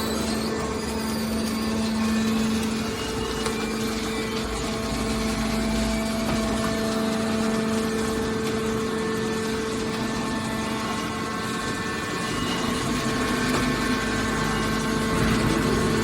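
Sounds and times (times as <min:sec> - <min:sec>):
hydraulic baler humming: 0:00.0 - 0:16.0.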